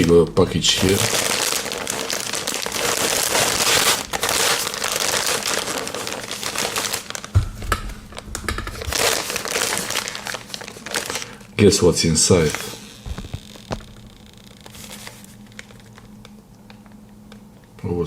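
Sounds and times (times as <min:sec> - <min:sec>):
packaging crinkling: 0:00.0 - 0:17.4
low thump: 0:07.4 - 0:08.7.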